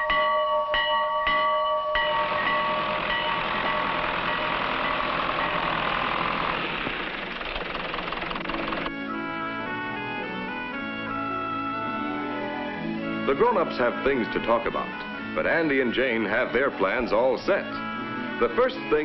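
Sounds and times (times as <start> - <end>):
farm bell ringing: 0.0 - 6.5
engine-like noise: 2.1 - 9.7.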